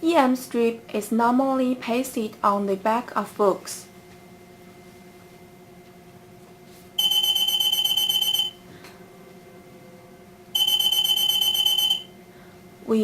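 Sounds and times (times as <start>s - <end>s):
security gate alarm beep: 7.0s - 8.6s, 10.6s - 12.1s.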